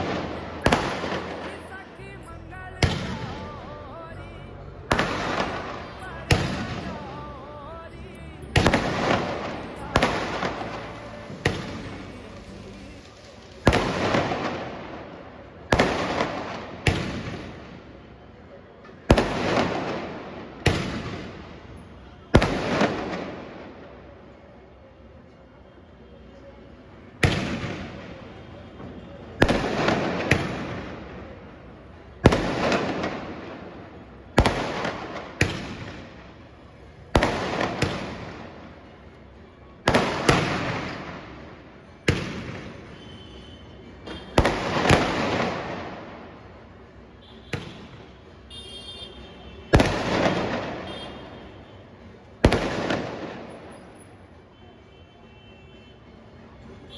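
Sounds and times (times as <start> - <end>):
firework bangs: 0.0 - 4.2, 4.9 - 18.0, 19.1 - 21.8, 22.4 - 23.9, 27.2 - 31.4, 32.2 - 36.4, 37.1 - 38.8, 39.9 - 46.5, 47.3 - 48.8, 49.6 - 51.6, 52.4 - 53.9.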